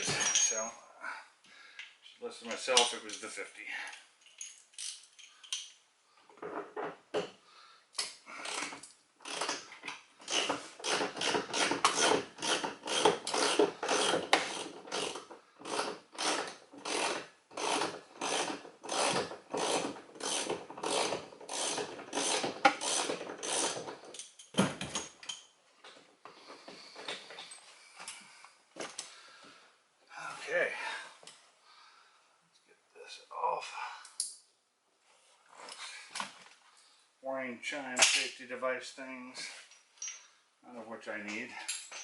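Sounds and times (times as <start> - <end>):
ratchet clicking: 10.3 - 23.8.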